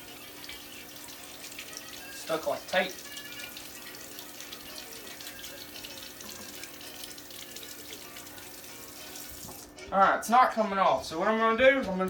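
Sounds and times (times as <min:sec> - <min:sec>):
faucet water splashing: 0:00.0 - 0:09.7.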